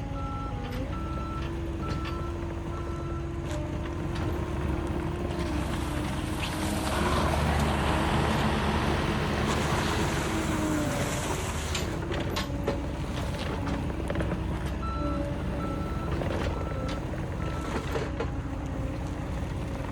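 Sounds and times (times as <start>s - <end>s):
diesel engine and hydraulics: 0.0s - 19.9s.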